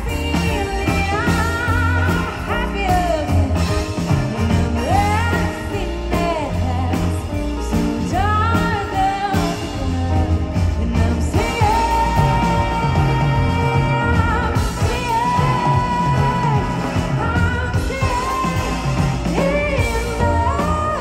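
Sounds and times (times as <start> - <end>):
live band music: 0.0 - 21.0
woman singing: 0.0 - 21.0.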